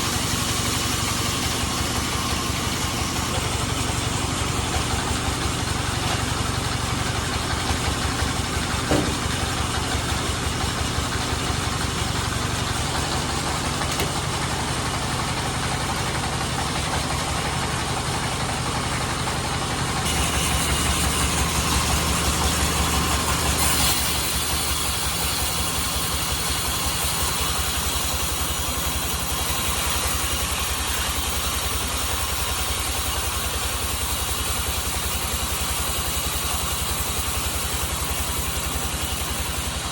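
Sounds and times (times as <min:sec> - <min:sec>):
band sawmill running: 0:00.0 - 0:39.9.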